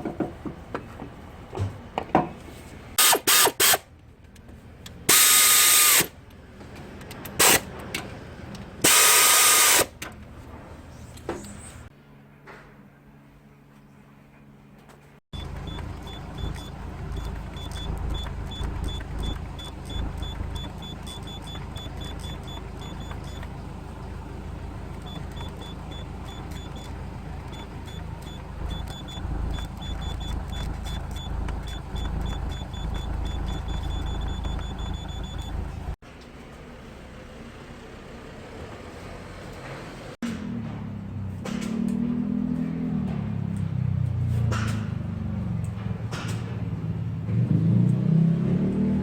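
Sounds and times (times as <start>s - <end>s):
fast high electronic beeping: 15.4s - 23.5s, 27.5s - 35.7s
car engine running: 15.4s - 38.5s.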